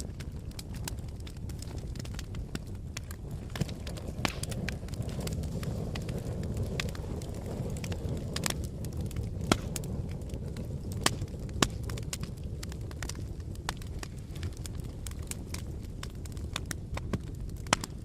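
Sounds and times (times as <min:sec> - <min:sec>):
fire crackling and popping: 0:00.0 - 0:18.0.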